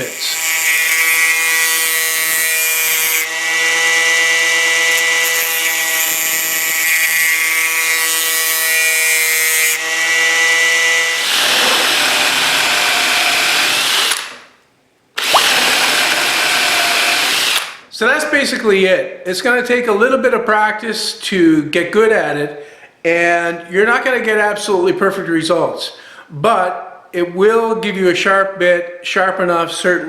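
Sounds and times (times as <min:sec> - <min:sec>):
angle grinder grinding steel: 0:08.7 - 0:14.2, 0:15.2 - 0:17.6.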